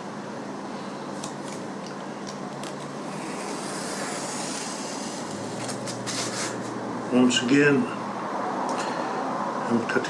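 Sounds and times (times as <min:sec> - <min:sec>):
steady room hum: 0:00.0 - 0:10.0
knife cutting foam: 0:03.0 - 0:06.7.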